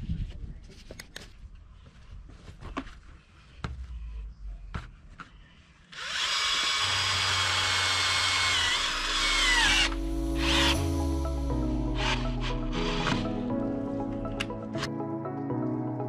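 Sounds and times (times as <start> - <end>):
power drill boring into clay soil: 5.9 - 10.8.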